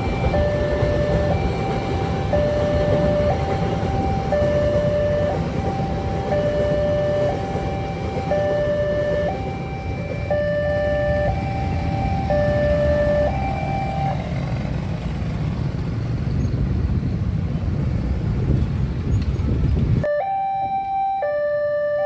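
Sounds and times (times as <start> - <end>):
level crossing two-tone alarm: 0.0 - 14.2, 20.1 - 22.0
road traffic rumble: 0.0 - 22.0.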